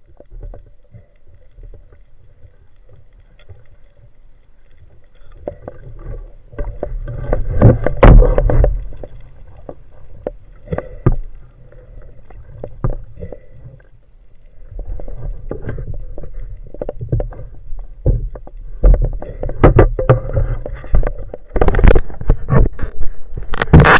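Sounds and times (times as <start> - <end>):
muffled rumbling water: 0.0 - 23.9
irregular knocks and clicks: 5.3 - 13.9, 15.0 - 23.9.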